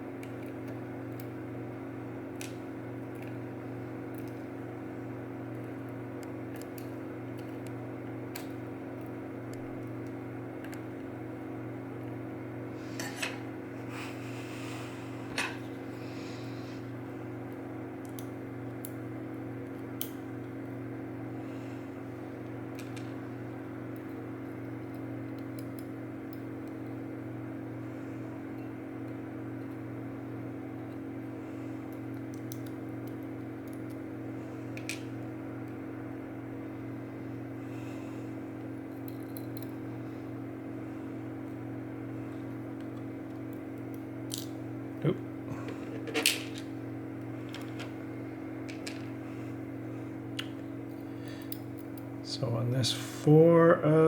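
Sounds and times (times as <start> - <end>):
steady electrical hum: 0.0 - 54.0
lock pins clicking and clinking: 48.6 - 49.2.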